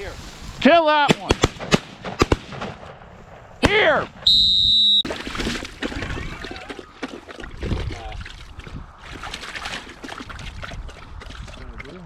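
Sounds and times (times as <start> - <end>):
crackling through dry vegetation: 0.0 - 4.0.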